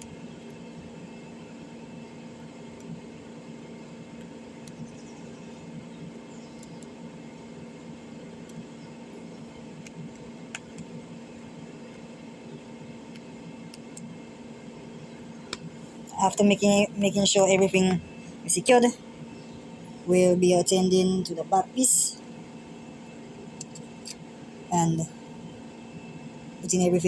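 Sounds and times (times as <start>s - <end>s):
low electrical hum: 0.0s - 27.0s.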